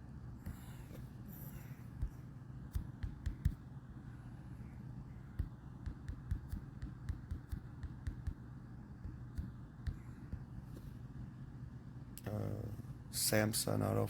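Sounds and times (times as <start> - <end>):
fingertips tapping touchscreen: 2.0 - 3.6, 5.3 - 10.6.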